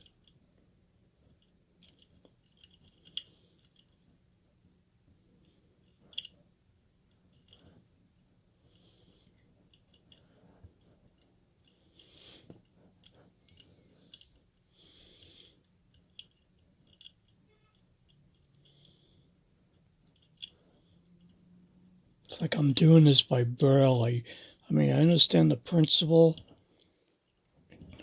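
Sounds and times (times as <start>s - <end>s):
metallic clicks of lock picking: 1.4s - 4.1s, 5.8s - 6.4s, 11.1s - 14.6s, 15.6s - 18.8s, 20.0s - 20.6s
soft scraping of picking tools: 5.2s - 21.4s.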